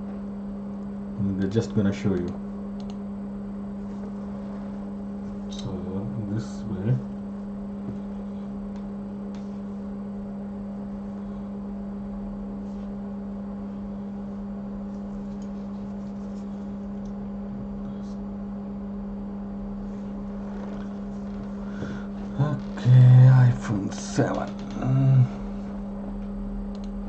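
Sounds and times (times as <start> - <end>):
steady electrical hum: 0.0 - 27.0
faint clicks: 2.1 - 3.0, 26.7 - 27.0.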